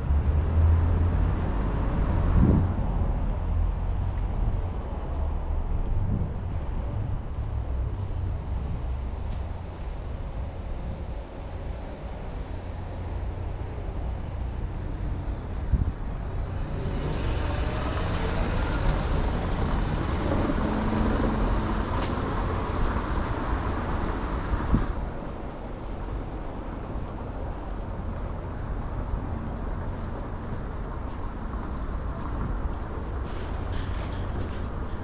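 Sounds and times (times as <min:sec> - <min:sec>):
low traffic rumble: 0:00.0 - 0:35.0
motor vehicle passing: 0:14.4 - 0:25.0.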